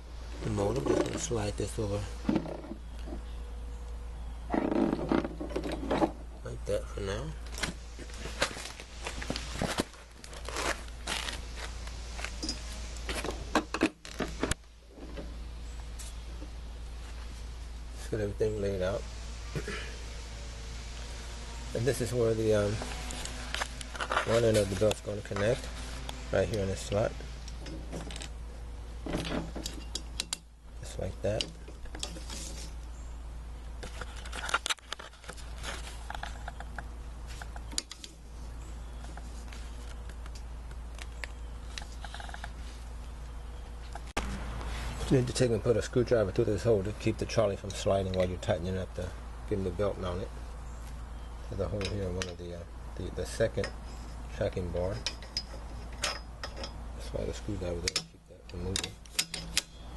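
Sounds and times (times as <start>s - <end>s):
steady low hum: 0.0s - 59.9s
sharp clicks and knocks: 29.0s - 30.5s, 57.8s - 59.8s
light clicks and scrapes: 31.4s - 32.9s, 33.8s - 38.2s, 39.0s - 42.9s.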